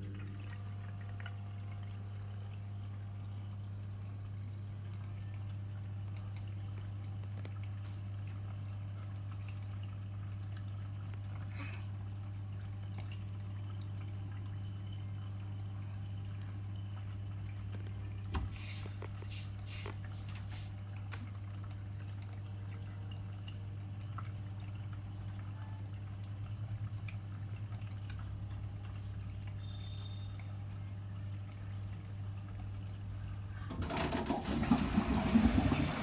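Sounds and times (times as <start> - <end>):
drain pump humming: 0.0 - 36.0.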